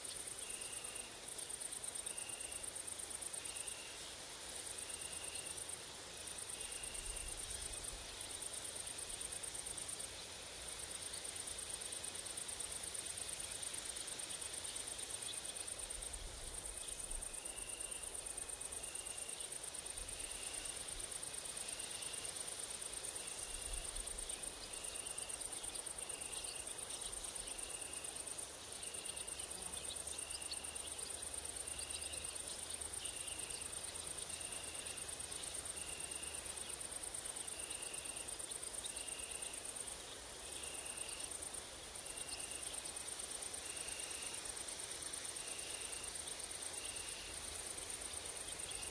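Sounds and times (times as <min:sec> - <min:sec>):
insects buzzing high-pitched: 0:10.8 - 0:48.9
short insect chirp: 0:21.6 - 0:48.9.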